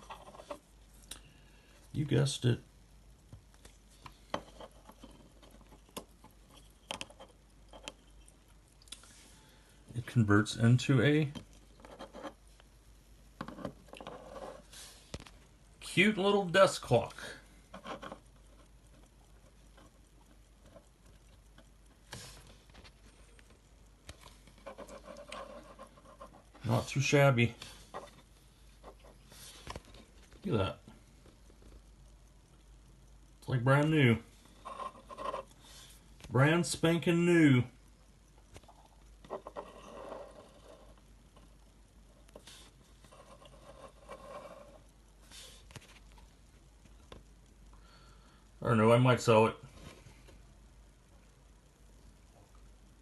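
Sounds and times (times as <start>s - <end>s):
small object scraping on tabletop: 39.3s - 40.9s, 43.1s - 44.8s.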